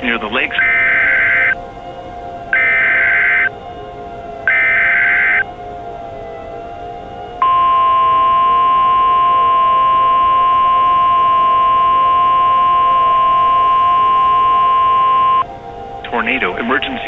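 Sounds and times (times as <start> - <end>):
steady single-pitch alarm tone: 0.0 - 5.6, 6.2 - 17.0
harsh digital screech: 0.6 - 1.6, 2.6 - 3.5.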